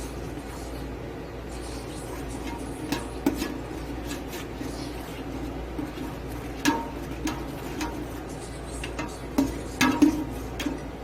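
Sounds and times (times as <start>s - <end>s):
spoon scraping in cooking pot: 1.5s - 11.0s
spoon clinking on pot: 5.9s - 11.0s.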